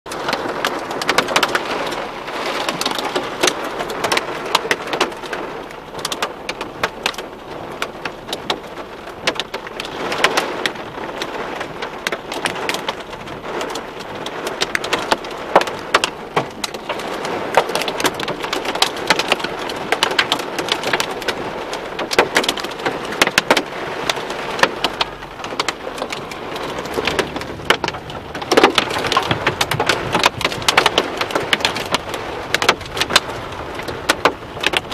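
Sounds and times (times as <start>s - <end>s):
heavy rain downpour: 0.1s - 34.9s
hailstones striking hard surfaces: 22.0s - 34.9s.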